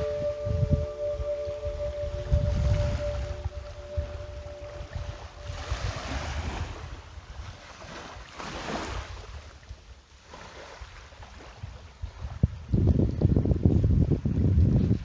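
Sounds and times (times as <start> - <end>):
wind gusting on microphone: 0.0 - 6.9.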